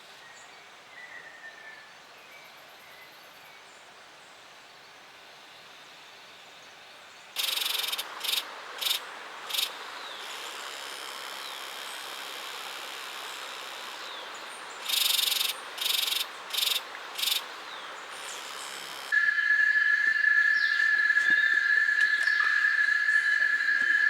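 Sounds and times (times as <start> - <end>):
insect chorus hiss: 2.0 - 24.0
insect buzzing call: 7.4 - 24.0.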